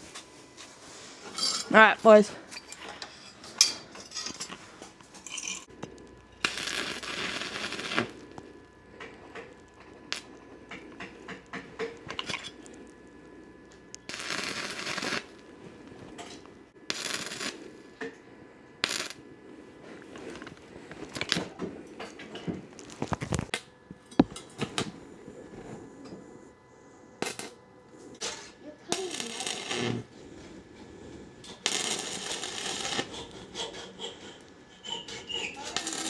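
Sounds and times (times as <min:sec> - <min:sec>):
thin metal pieces clinking: 0:02.6 - 0:05.7.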